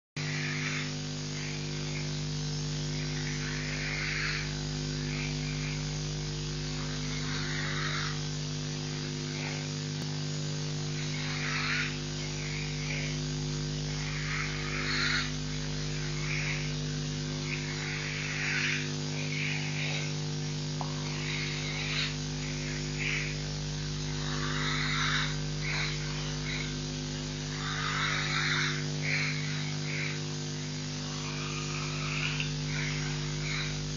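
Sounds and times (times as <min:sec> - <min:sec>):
electrical hum: 0:00.2 - 0:33.9.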